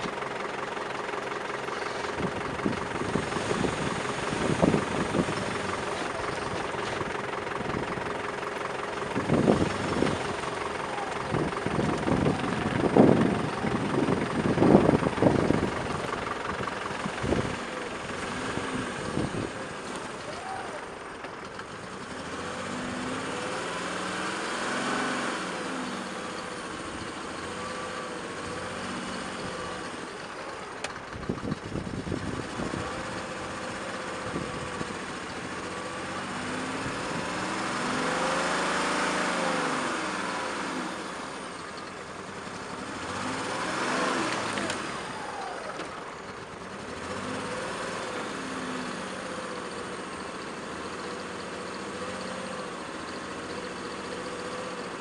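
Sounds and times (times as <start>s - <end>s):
off-road vehicle engine revving: 0.0s - 55.0s.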